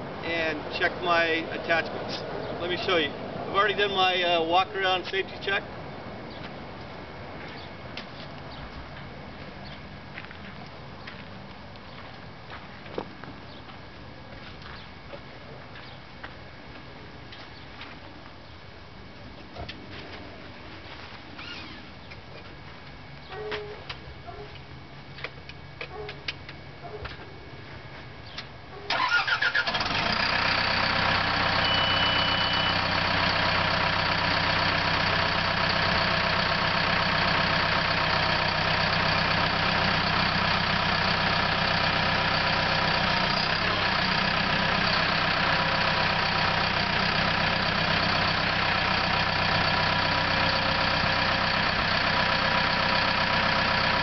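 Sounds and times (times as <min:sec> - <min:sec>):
diesel engine starting and idling: 0:28.9 - 0:54.0
short high beep: 0:31.5 - 0:32.9.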